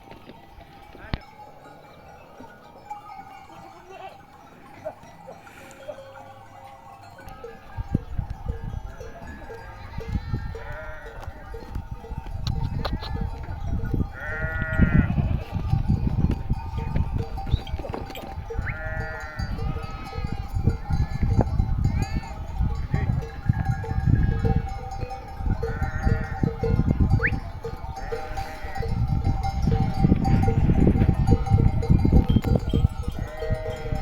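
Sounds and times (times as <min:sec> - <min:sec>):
sheep bleating: 0:03.3 - 0:05.0, 0:09.4 - 0:11.5, 0:14.1 - 0:15.6, 0:18.6 - 0:20.5, 0:25.6 - 0:26.5, 0:28.0 - 0:28.9, 0:33.2 - 0:34.0
steady ringing: 0:13.6 - 0:34.0.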